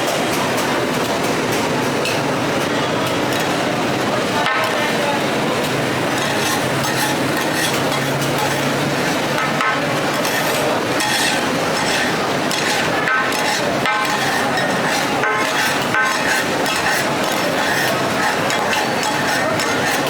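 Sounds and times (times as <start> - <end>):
food frying in oil: 3.3 - 20.0
metal utensils clinking: 5.7 - 20.0.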